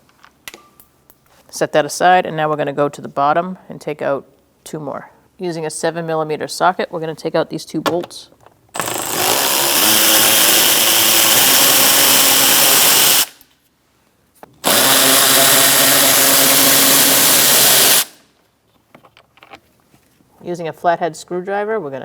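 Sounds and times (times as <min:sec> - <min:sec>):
cordless power tool spinning: 0:08.8 - 0:13.4, 0:14.6 - 0:18.2.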